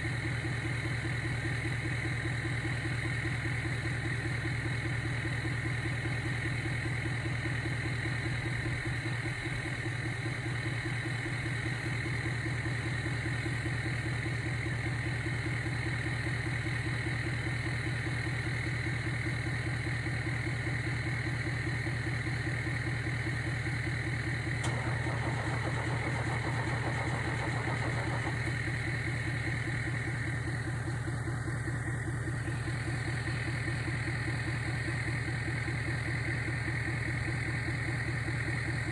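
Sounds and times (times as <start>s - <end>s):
engine starter cranking: 24.5s - 30.0s.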